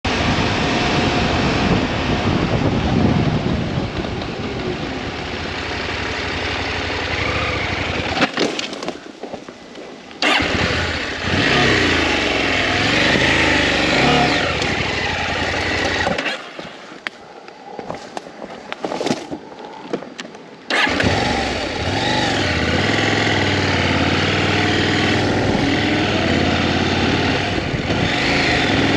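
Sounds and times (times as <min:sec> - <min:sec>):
rushing wind noise: 0:00.0 - 0:05.9, 0:20.6 - 0:28.9
motorcycle engine running: 0:00.1 - 0:08.4, 0:10.2 - 0:16.3, 0:20.7 - 0:28.9.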